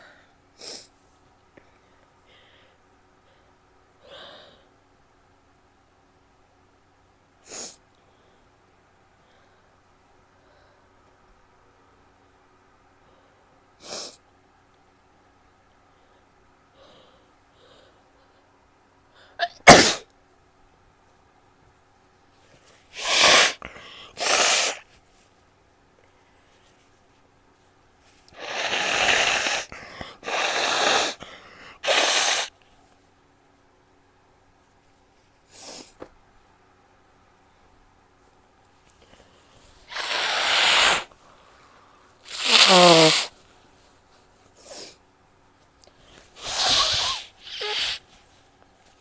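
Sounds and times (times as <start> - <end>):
person blowing nose: 7.5 - 7.8, 13.8 - 14.2, 19.4 - 20.0, 22.9 - 25.0, 28.3 - 32.5, 35.5 - 36.0, 39.8 - 41.1, 42.3 - 43.4, 44.6 - 45.0, 46.3 - 48.2
person sneezing: 19.4 - 20.1, 23.0 - 24.9, 28.4 - 32.5, 39.9 - 41.1, 42.3 - 43.4, 46.4 - 48.1.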